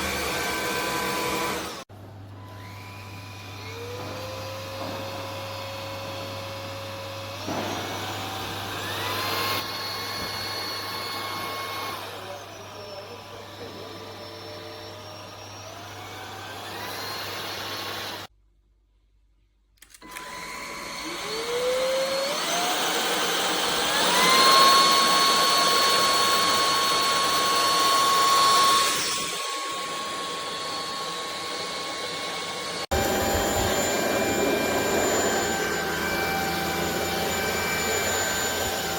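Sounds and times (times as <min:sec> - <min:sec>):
vacuum cleaner motor whining: 0:00.0 - 0:18.3, 0:19.9 - 0:38.9.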